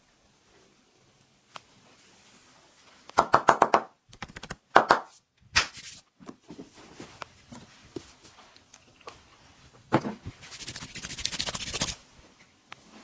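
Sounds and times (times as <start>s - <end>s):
hands slapping a body: 3.2s - 5.9s.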